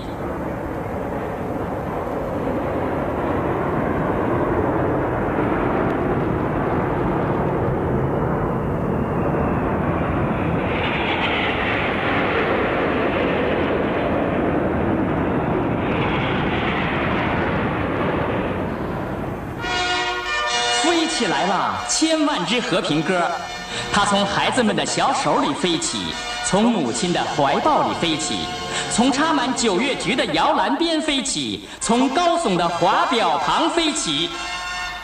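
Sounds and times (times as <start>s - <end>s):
engine roar: 0.0s - 20.7s.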